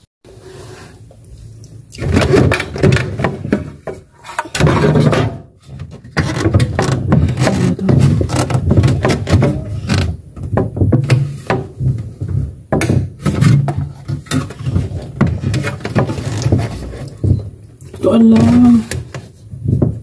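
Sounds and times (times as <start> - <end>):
refrigerator drawers knocking and sliding: 2.0 - 20.0.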